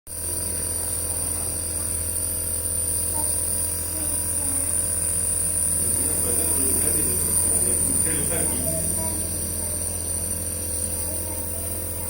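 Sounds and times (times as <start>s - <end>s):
nebulizer compressor humming: 0.1s - 12.0s.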